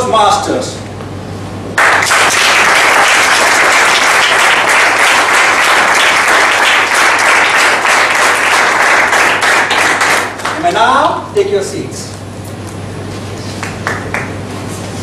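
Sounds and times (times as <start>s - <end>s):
audience applauding: 1.8s - 10.7s, 13.6s - 14.4s.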